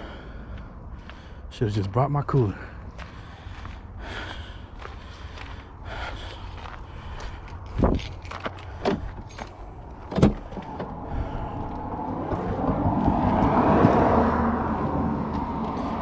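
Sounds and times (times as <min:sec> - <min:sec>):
road noise: 0:00.0 - 0:16.0
car engine hum: 0:02.4 - 0:16.0.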